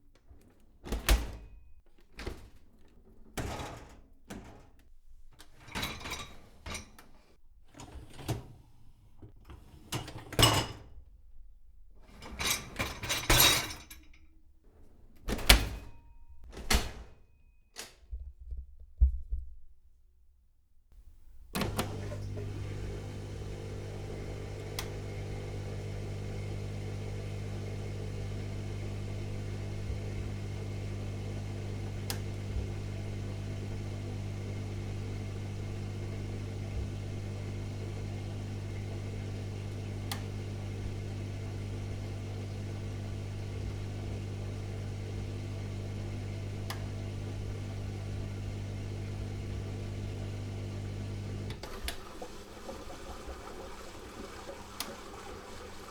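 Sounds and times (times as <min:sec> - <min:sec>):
dishwasher motor hum: 0:21.0 - 0:55.9.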